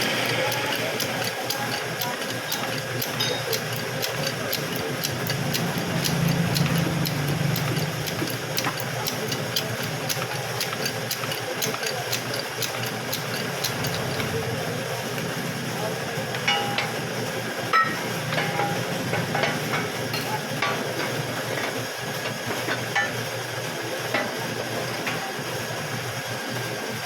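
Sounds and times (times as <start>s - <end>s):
fast even ticking: 0.0s - 14.3s
engine running: 5.1s - 8.4s.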